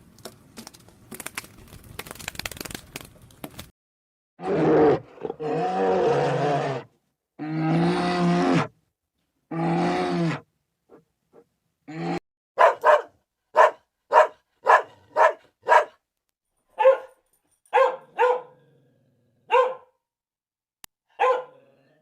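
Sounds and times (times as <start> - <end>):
dog barking: 12.6 - 16.0, 16.8 - 18.6, 19.4 - 20.0, 21.1 - 21.6.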